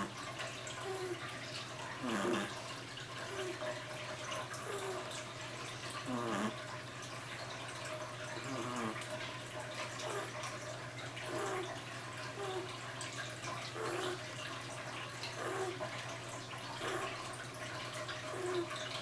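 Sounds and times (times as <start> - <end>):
dog snoring: 2.0 - 2.6, 6.0 - 6.6, 8.4 - 9.0, 11.2 - 11.7, 13.8 - 14.2, 15.4 - 15.8, 16.8 - 17.2, 18.3 - 18.7
dog snorting: 2.0 - 2.6, 6.0 - 6.6, 8.4 - 9.0, 11.2 - 11.7, 13.8 - 14.2, 15.4 - 15.8, 16.8 - 17.2.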